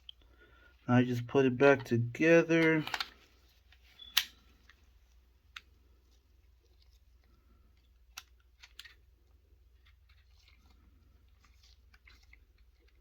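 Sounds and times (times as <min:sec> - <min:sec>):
pistol parts clicking: 0:02.6 - 0:03.2.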